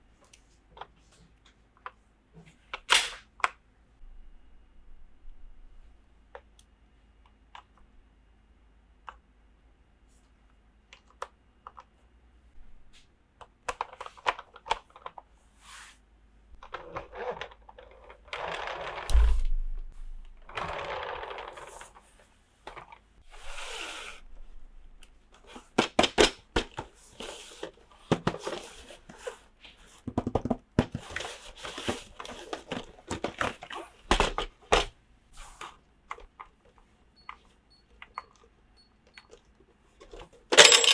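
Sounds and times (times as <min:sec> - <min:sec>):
loud thunk: 0:19.1 - 0:20.4
clicking and rattling: 0:40.1 - 0:40.9
plastic toy pieces clicking: 0:40.6 - 0:40.9.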